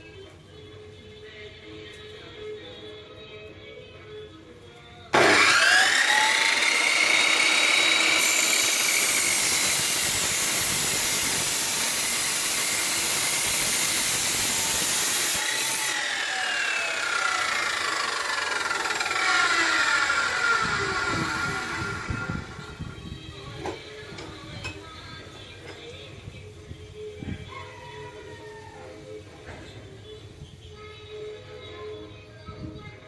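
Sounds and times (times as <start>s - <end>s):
cut-off saw motor whine: 5.2s - 23.0s
harsh hiss: 8.3s - 16.0s.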